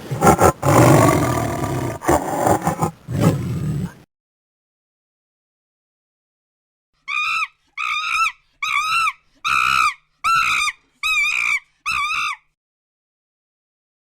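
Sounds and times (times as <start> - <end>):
animal high calls: 0.1 - 4.0.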